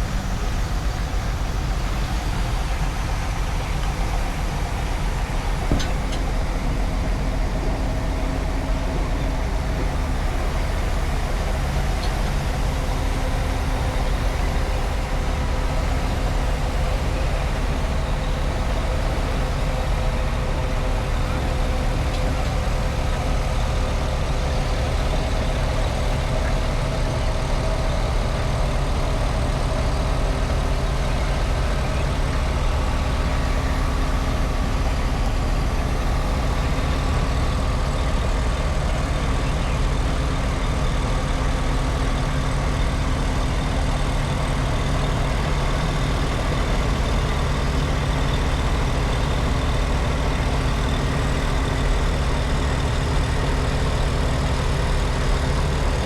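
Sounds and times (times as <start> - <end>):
heavy vehicle engine running: 0.0 - 56.0.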